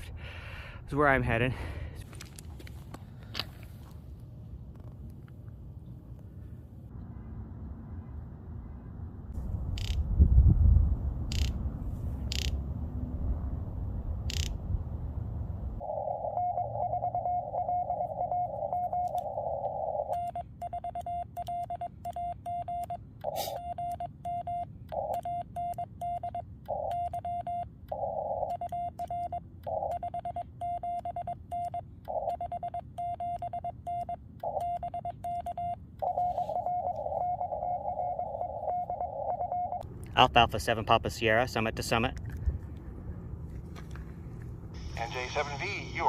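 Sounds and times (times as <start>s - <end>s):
morse code tone: 15.8s - 39.8s
receiver hiss: 44.8s - 46.0s.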